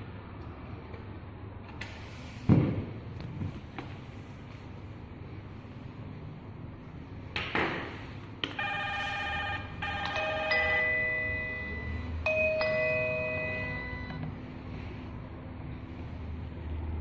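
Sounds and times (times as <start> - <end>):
electronic doorbell chime: 8.6 - 14.2.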